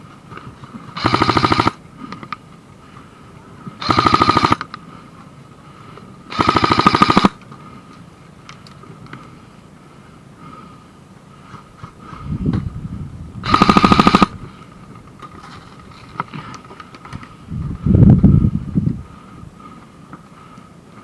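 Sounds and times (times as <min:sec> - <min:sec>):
airsoft gun full-auto bursts: 0:01.0 - 0:01.8, 0:03.8 - 0:04.7, 0:06.3 - 0:07.4, 0:13.4 - 0:14.4.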